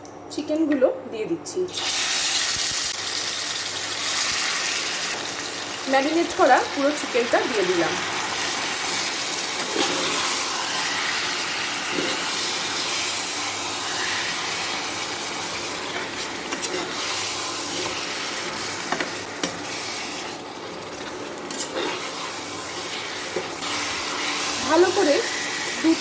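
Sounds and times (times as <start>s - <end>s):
chicken sizzling in hot oil: 1.8s - 26.0s.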